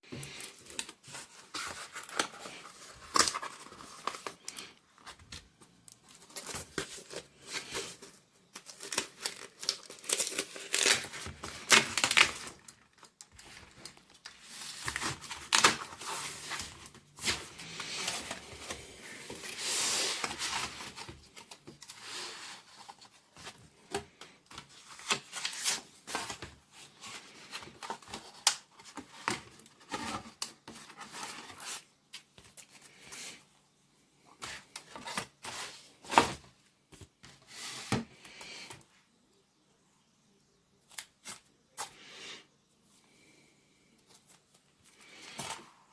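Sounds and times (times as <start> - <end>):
wrapping crinkling: 5.8 - 22.3.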